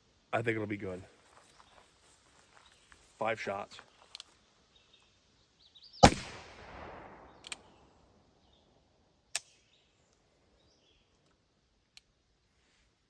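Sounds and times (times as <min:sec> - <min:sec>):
revolver shot echoing: 0:06.0 - 0:07.4.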